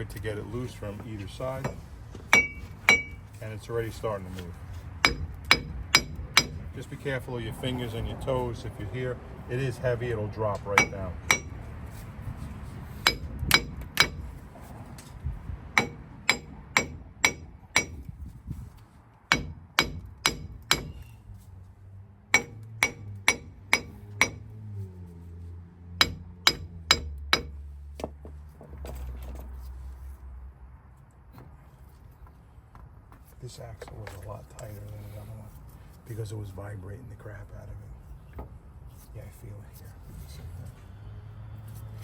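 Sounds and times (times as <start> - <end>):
sledgehammer striking metal: 1.6 - 3.2, 5.0 - 6.7, 10.7 - 11.6, 13.0 - 14.4, 15.7 - 18.1, 19.3 - 21.2, 22.3 - 24.6, 26.0 - 27.6.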